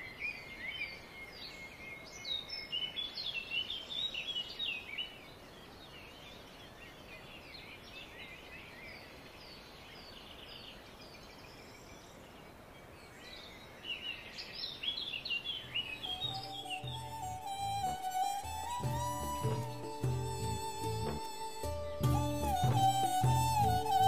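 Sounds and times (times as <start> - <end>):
faint background hiss: 0.0 - 24.0
small birds chirping: 0.0 - 24.0.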